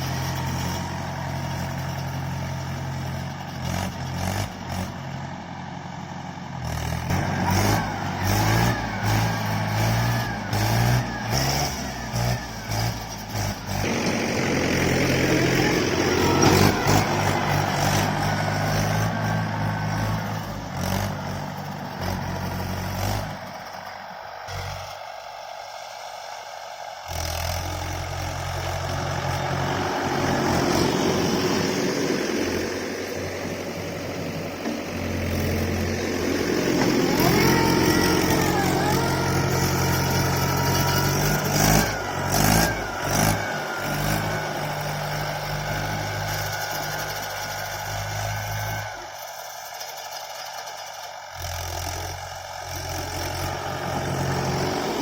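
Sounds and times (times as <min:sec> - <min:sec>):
tractor diesel engine revving: 0:00.0 - 0:55.0
rising and falling whine: 0:35.0 - 0:47.2.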